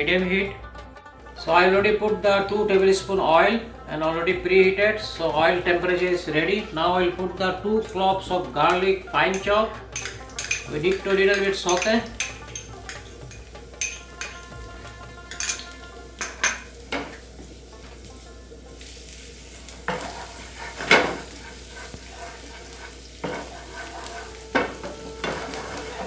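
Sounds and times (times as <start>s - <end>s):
utensil knocking and scraping pan: 1.2s - 18.2s, 18.8s - 26.0s
garlic sizzling in hot oil: 1.2s - 26.0s.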